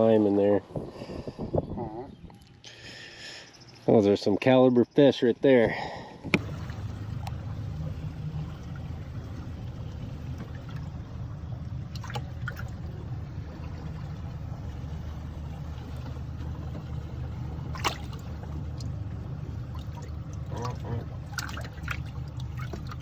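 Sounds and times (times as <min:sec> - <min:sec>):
boat engine drone: 0:06.4 - 0:23.0
water trickling: 0:06.4 - 0:23.0.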